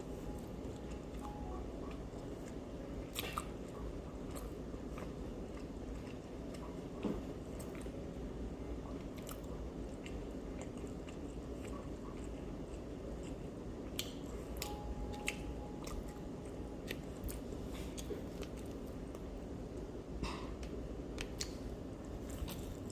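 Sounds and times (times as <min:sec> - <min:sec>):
chewing and biting: 0:00.8 - 0:08.2, 0:08.8 - 0:16.1, 0:21.2 - 0:22.9.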